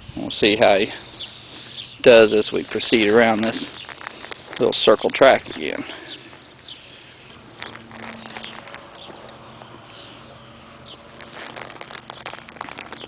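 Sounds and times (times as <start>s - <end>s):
bird chirps: 0.9s - 4.5s, 5.4s - 13.0s
footsteps through grass: 2.8s - 13.0s.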